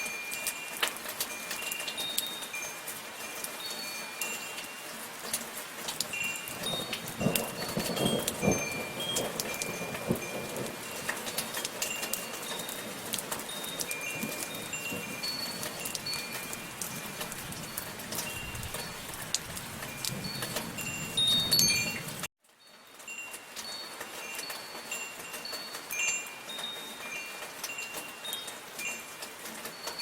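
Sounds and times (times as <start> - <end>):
soft steady rain: 0.0 - 30.0
wind chimes ringing: 0.0 - 30.0.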